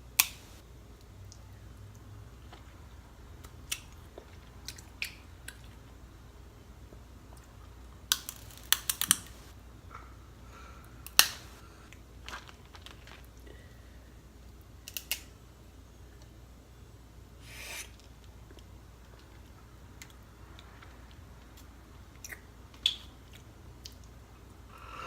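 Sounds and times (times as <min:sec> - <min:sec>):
crab shells cracking by hand: 0:08.1 - 0:09.4, 0:11.1 - 0:11.4, 0:14.8 - 0:15.3.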